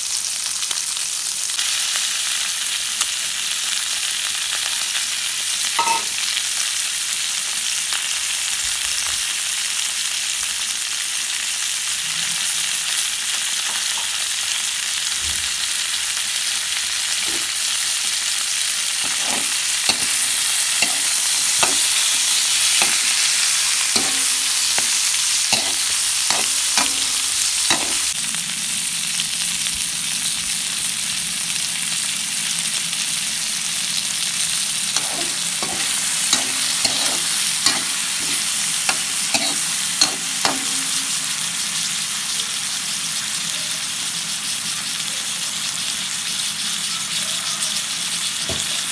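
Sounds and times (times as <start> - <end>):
food sizzling in a pan: 0.0 - 48.9
utensil knocking against pan: 19.0 - 22.0, 22.8 - 23.1, 24.0 - 28.1, 35.0 - 41.3.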